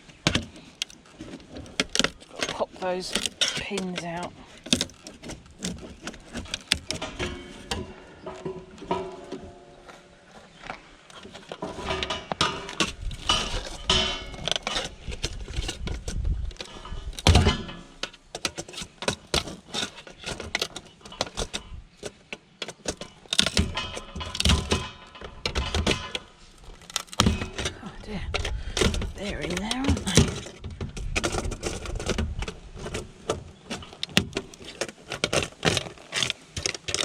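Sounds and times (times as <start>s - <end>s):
metal parts clinking and rattling: 0.7s - 9.7s, 11.1s - 37.0s.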